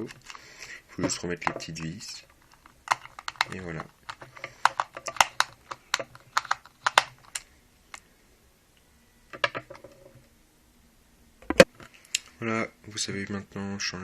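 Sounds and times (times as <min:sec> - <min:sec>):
plastic controller clicks: 0:02.9 - 0:08.0.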